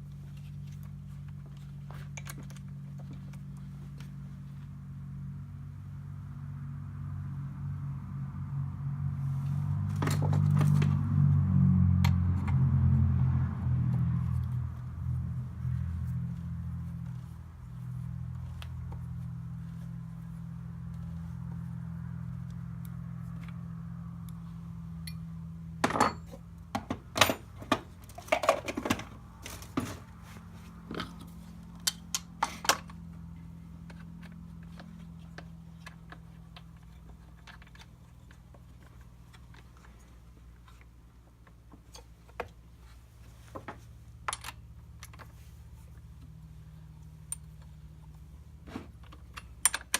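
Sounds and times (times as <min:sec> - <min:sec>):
metal tools clinking: 0:25.0 - 0:26.4.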